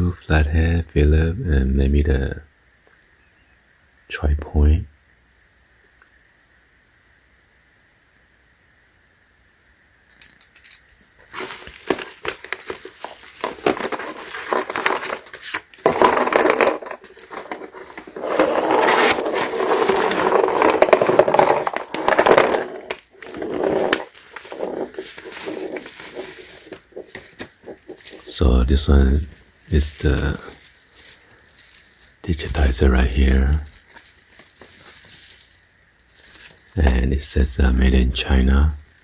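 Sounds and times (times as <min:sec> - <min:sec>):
plastic packaging crinkling: 0:10.4 - 0:37.4, 0:38.2 - 0:39.0.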